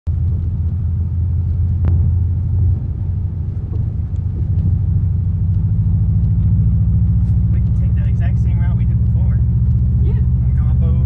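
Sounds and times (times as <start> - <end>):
car engine and road noise: 0.0 - 11.0.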